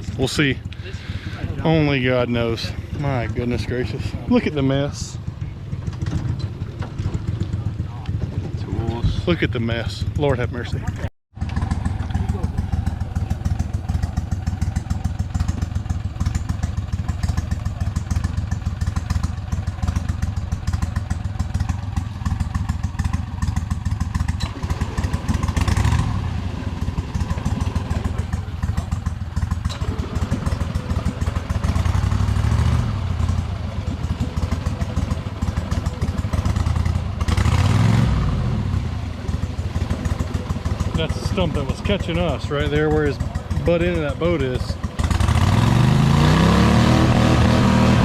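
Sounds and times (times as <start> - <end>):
boat engine revving: 10.7 - 48.0.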